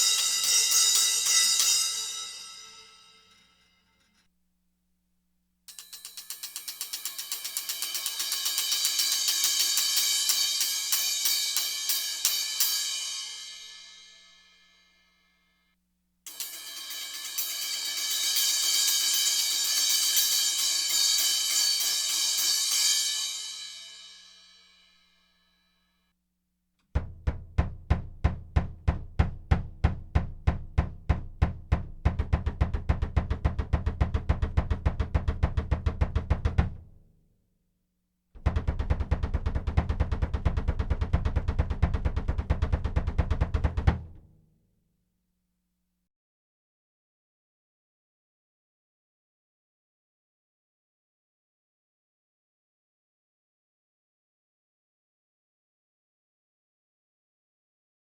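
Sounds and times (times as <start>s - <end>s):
low drum strokes: 27.0s - 37.0s, 38.4s - 44.3s.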